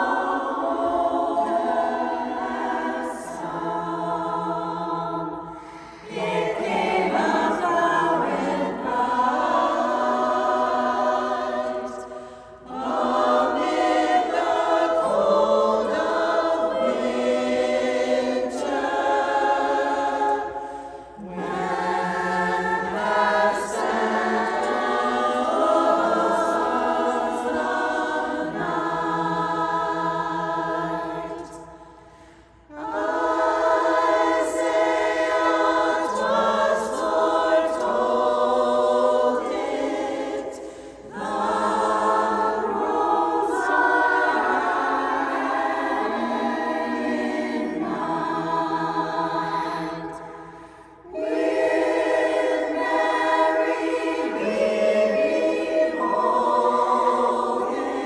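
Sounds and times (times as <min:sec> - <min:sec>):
a cappella chorus singing: 0:00.0 - 0:58.0.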